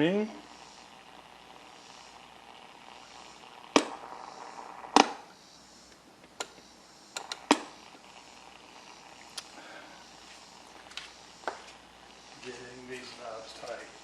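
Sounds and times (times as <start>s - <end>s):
faint steady hiss: 0.0s - 14.0s
knobs clicking and knocking: 7.2s - 7.7s.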